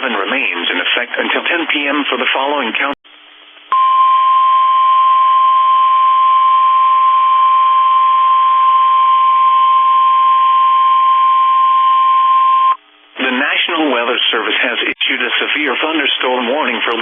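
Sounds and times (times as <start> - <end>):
steady high alarm tone: 3.7 - 12.8
faint radio hiss: 12.9 - 17.0.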